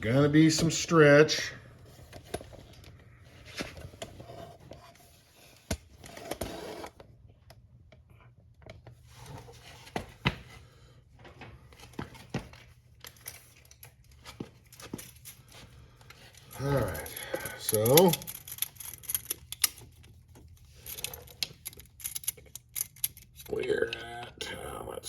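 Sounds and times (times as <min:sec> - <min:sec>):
tools and metal parts clicking: 0:16.0 - 0:23.5.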